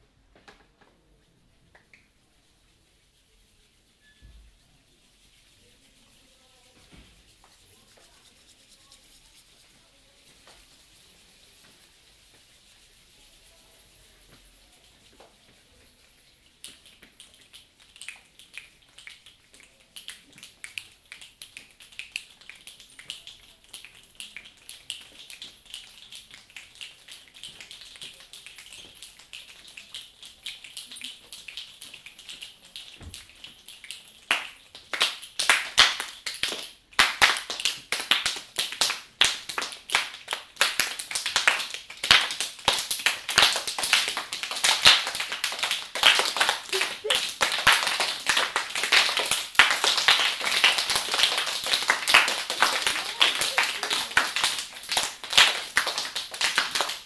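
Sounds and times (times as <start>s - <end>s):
fast clapping: 16.6s - 57.0s.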